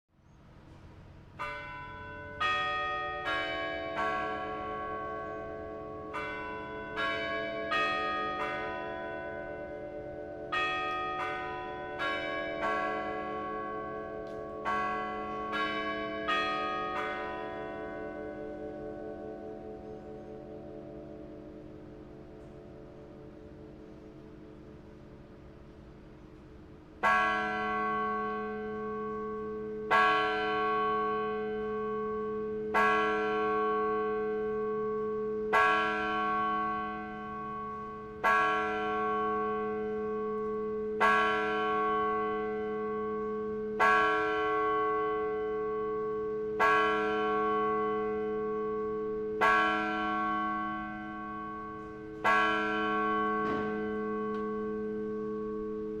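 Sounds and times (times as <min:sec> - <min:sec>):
tower bell tolling: 0:01.3 - 0:56.0.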